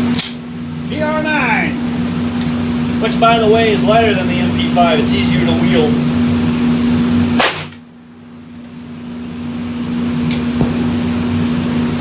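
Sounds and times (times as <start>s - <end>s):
low hum: 0.0s - 12.0s
suppressed gunshot: 7.4s - 7.8s.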